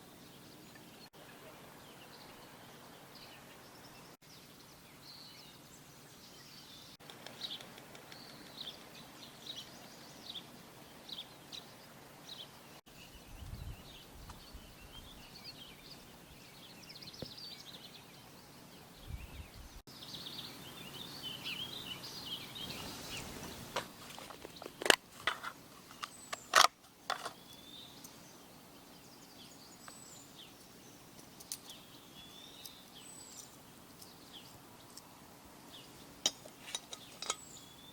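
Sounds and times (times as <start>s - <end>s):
songbirds chirping: 0.0s - 37.9s
steady outdoor hiss: 0.0s - 37.9s
wind rumble on microphone: 13.1s - 15.3s, 19.0s - 19.8s.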